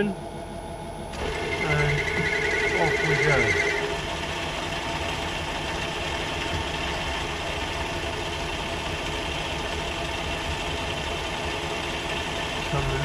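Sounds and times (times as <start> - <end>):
metal lathe turning: 1.2 - 12.9.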